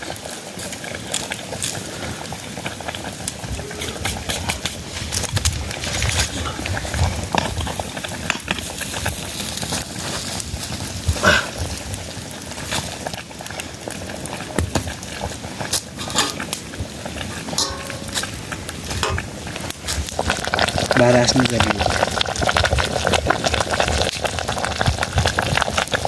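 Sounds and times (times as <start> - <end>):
food sizzling in a pan: 0.0 - 26.0
utensil scraping in a pan: 15.0 - 22.0.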